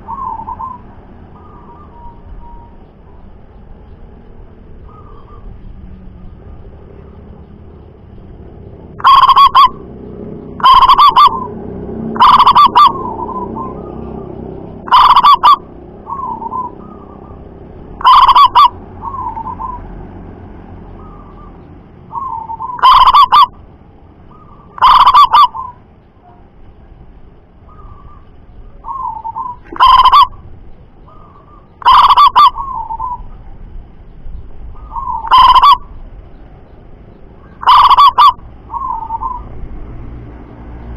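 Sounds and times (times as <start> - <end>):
doves cooing: 0.0 - 2.8, 4.8 - 5.6, 8.9 - 20.0, 20.9 - 23.6, 24.2 - 26.4, 27.6 - 33.6, 34.6 - 36.0, 37.4 - 39.9.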